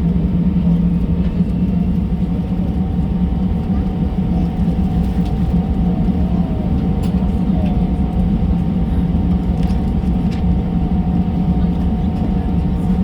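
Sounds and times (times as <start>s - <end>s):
low rumble of aircraft cabin: 0.0s - 13.0s.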